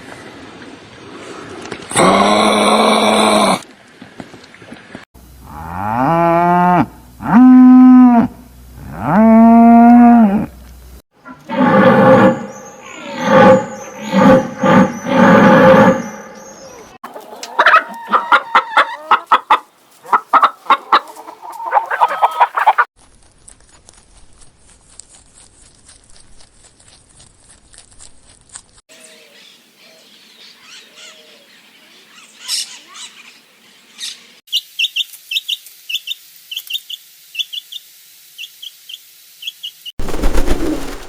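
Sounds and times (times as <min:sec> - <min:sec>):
hen clucking: 0:16.7 - 0:22.9
rooster crowing: 0:17.3 - 0:19.2.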